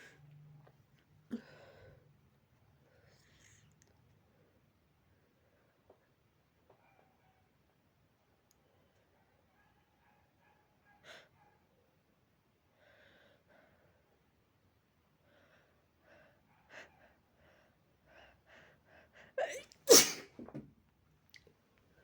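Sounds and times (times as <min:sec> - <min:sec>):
person sneezing loudly: 0:19.4 - 0:20.4.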